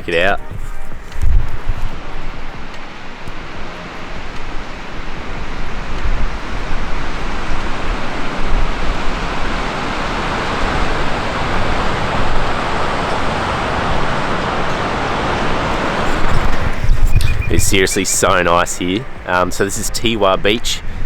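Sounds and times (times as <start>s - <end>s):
ocean surf: 0.0s - 21.0s
wind buffeting the microphone: 0.0s - 21.0s
wind rushing: 0.0s - 21.0s.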